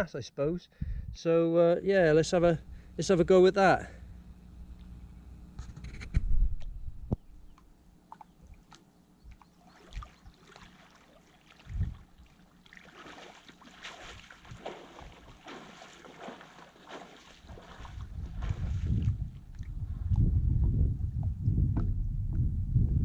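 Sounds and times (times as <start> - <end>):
water splashing and sloshing: 8.0 - 19.8.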